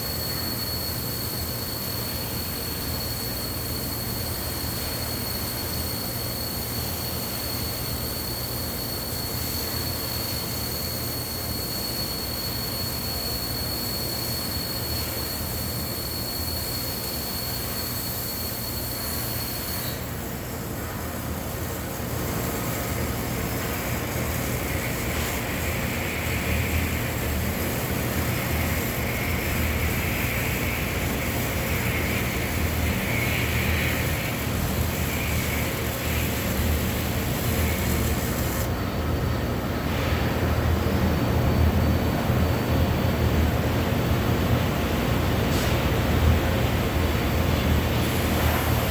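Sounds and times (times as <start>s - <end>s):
welding arc buzzing: 0.0s - 38.8s
high whine: 0.0s - 45.4s
mechanical hum and hiss: 0.0s - 48.9s.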